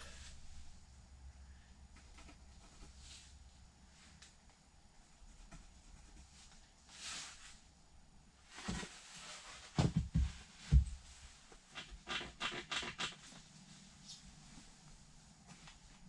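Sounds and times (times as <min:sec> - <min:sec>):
dull knocks and thumps: 0:09.7 - 0:11.1.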